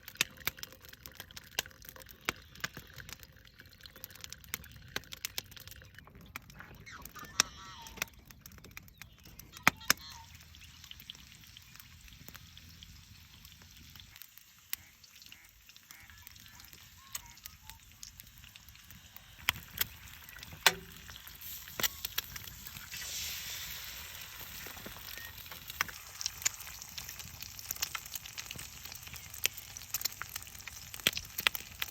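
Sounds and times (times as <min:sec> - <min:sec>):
campfire crackling and popping: 0:00.0 - 0:31.9
blackbirds calling: 0:06.6 - 0:18.2
coffee brewing hiss: 0:09.4 - 0:31.9.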